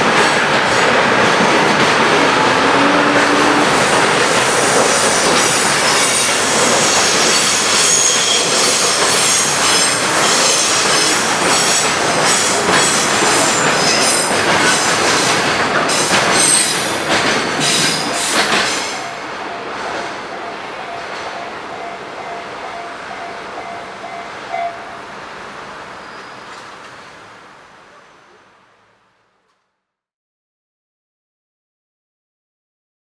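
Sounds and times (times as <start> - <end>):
freight train cars rolling: 0.0 - 28.8
steel wheels squealing and clacking: 0.1 - 19.2.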